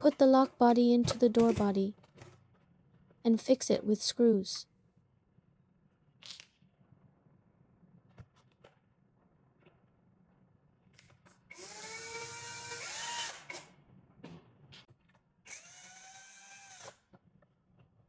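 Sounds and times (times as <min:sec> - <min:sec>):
electric screwdriver motor: 0:11.5 - 0:13.7, 0:15.5 - 0:17.0.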